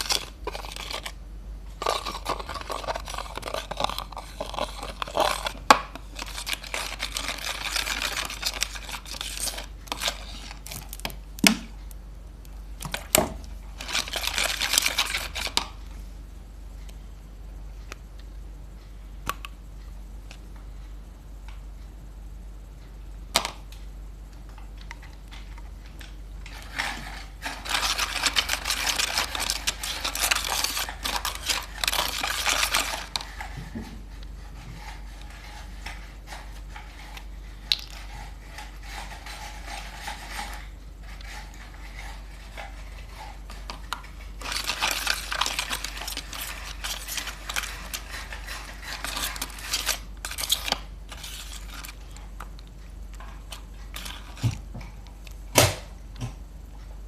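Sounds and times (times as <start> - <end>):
wet crackly slime scraping: 0.0 - 11.6, 12.8 - 15.8, 24.9 - 55.4.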